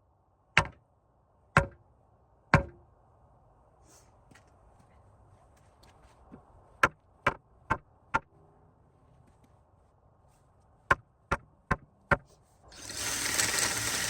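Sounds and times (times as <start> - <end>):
hammer striking wood: 0.6 - 0.8, 1.6 - 1.8, 2.6 - 2.8.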